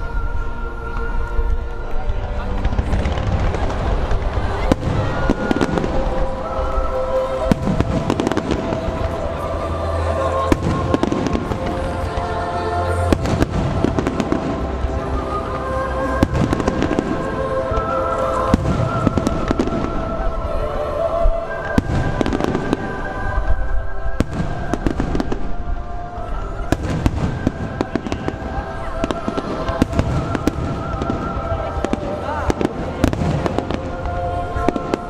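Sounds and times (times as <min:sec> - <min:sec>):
firework bursts and bangs: 0:02.1 - 0:09.2, 0:24.2 - 0:35.0.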